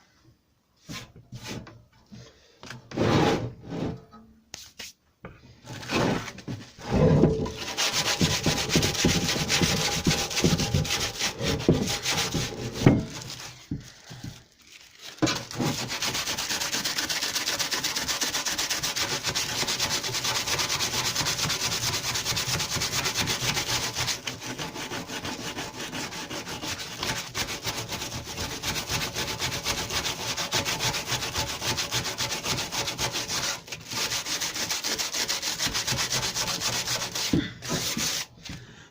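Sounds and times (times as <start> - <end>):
sanding metal: 7.5 - 13.5, 15.3 - 38.3.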